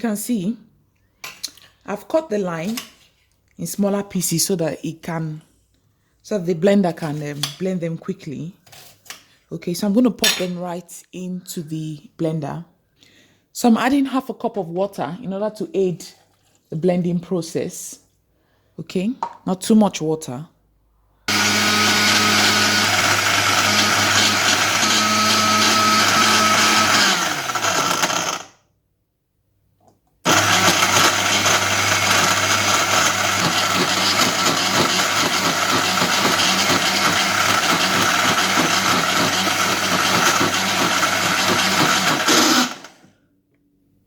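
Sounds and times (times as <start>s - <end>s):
blender running: 21.3s - 28.6s, 30.3s - 43.1s.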